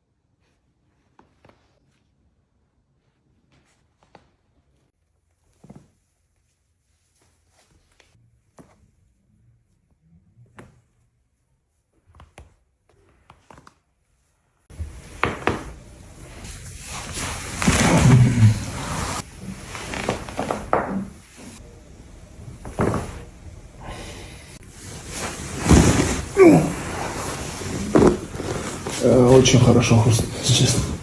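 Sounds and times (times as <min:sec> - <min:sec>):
person grunting: 0:17.8 - 0:18.8, 0:26.2 - 0:28.2.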